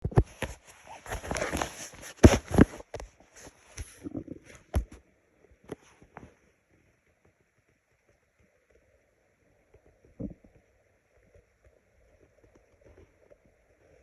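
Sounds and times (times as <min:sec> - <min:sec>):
microphone handling rustling: 0:00.0 - 0:05.0.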